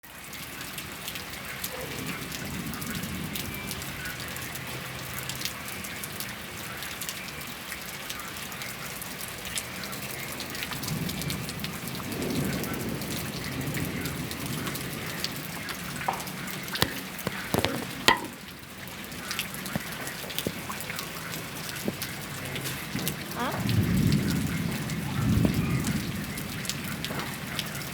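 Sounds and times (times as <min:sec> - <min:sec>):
heavy rain on hard surfaces: 0:00.0 - 0:27.9
low thunder rumble: 0:01.7 - 0:04.5, 0:10.3 - 0:19.2, 0:19.8 - 0:27.9.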